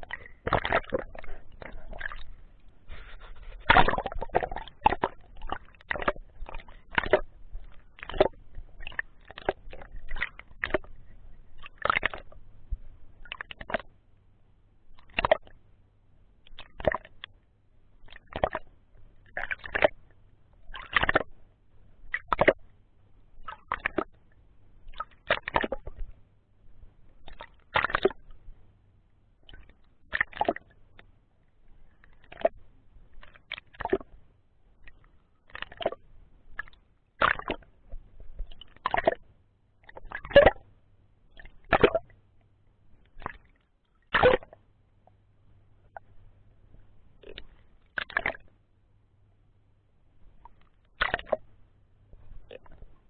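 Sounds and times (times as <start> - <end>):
underwater bubbles gurgling: 0.0 - 12.4, 29.4 - 30.8, 34.8 - 40.7
muffled underwater water swishing: 0.0 - 14.0, 16.4 - 53.0.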